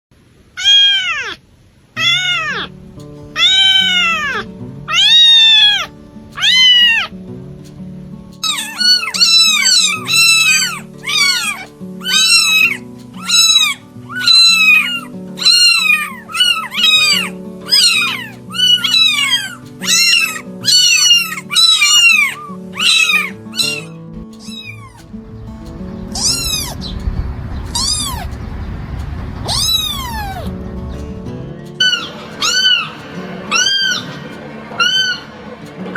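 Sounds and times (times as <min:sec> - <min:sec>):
cat meowing: 0:00.6 - 0:01.4, 0:02.0 - 0:02.7, 0:03.4 - 0:07.2, 0:08.4 - 0:28.8, 0:29.4 - 0:30.6, 0:31.7 - 0:35.9
soft background music: 0:02.0 - 0:35.9
low rumbling noise: 0:23.9 - 0:35.9.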